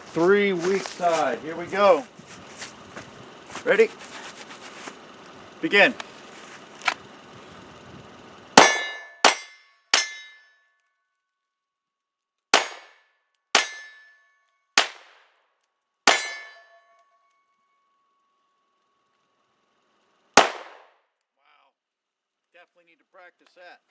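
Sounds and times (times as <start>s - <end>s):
pistol shots: 8.6s - 9.5s, 12.6s - 13.0s, 14.8s - 15.3s, 16.1s - 16.5s, 20.4s - 20.9s
ringing of struck steel target: 8.6s - 10.5s, 12.6s - 13.0s, 13.6s - 15.0s, 16.1s - 17.0s.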